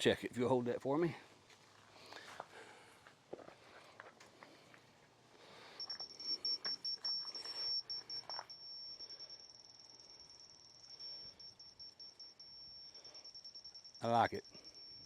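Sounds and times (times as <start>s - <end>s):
electronic level beeping: 5.8s - 15.0s.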